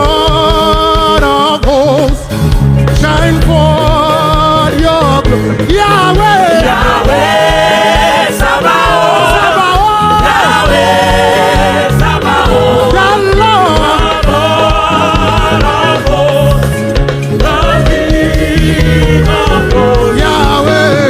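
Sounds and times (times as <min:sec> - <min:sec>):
gospel choir singing: 0:00.0 - 0:02.2, 0:02.9 - 0:21.0
live band with bass line: 0:00.0 - 0:21.0.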